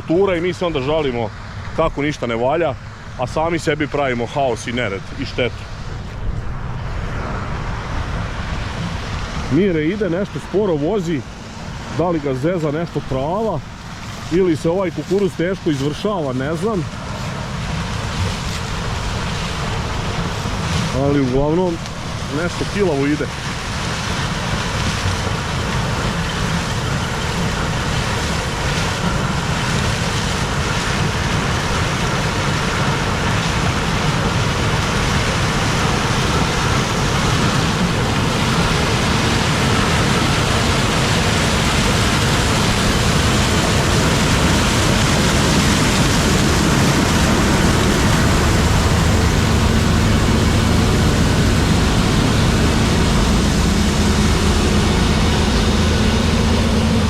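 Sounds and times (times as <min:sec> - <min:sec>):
combine harvester running: 0:00.0 - 0:57.0.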